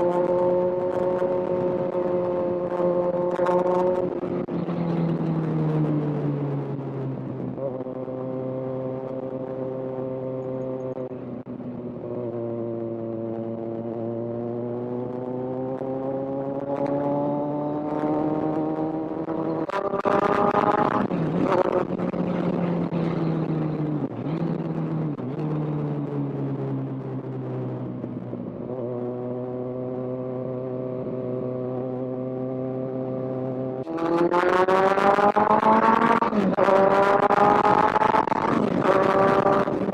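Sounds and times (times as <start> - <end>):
motorcycle engine accelerating: 0.0 - 39.9
wind buffeting microphone: 10.9 - 39.9.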